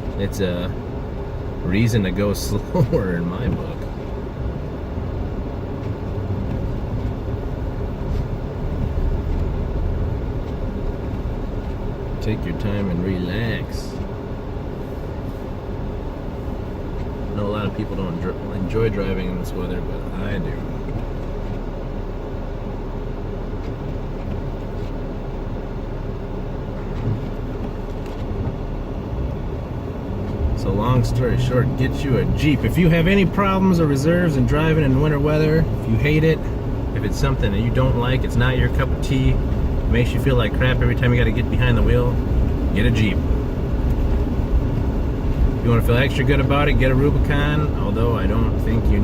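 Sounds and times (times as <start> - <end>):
engine and tyre rumble in cabin: 0.0 - 49.0.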